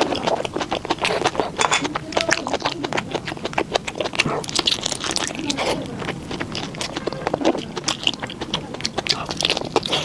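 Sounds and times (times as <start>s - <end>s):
chewing and biting: 0.0s - 10.0s
food crunching: 0.0s - 10.0s.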